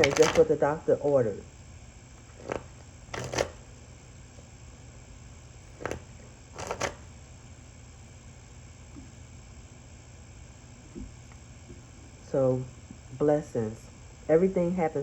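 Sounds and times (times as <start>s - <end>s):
steady low hum: 0.0s - 15.0s
cards flicking and tapping: 2.3s - 3.6s, 5.7s - 7.1s.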